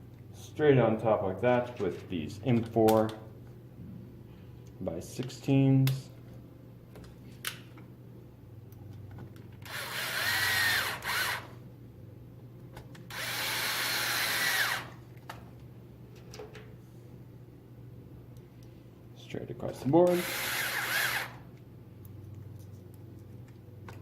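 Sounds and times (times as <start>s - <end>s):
power driver whining: 9.6s - 11.6s, 13.0s - 15.0s, 20.0s - 21.5s.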